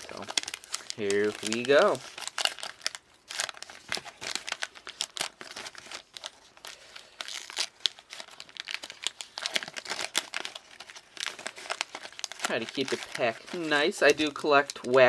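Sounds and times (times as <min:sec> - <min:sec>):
wax paper wrapper crinkling: 0:00.0 - 0:15.0.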